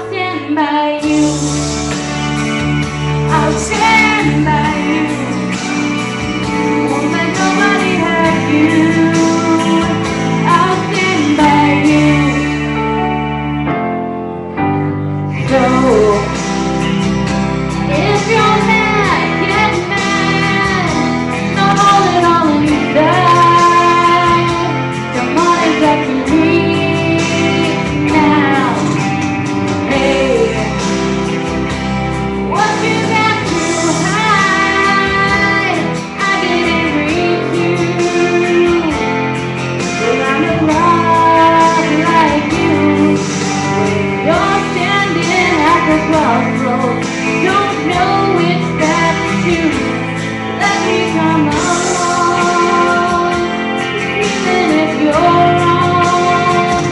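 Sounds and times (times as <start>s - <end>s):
woman singing: 0.0s - 1.6s, 3.3s - 13.0s, 15.4s - 16.4s, 17.8s - 29.1s, 29.8s - 31.0s, 32.5s - 56.9s
instrumental music with guitar: 0.0s - 56.9s.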